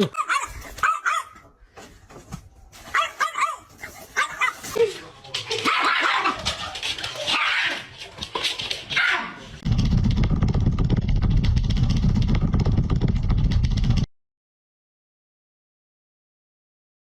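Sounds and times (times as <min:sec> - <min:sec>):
dog barking and yipping: 0:00.0 - 0:01.5, 0:02.9 - 0:04.8, 0:05.5 - 0:09.5
loud low rumbling: 0:09.6 - 0:14.1.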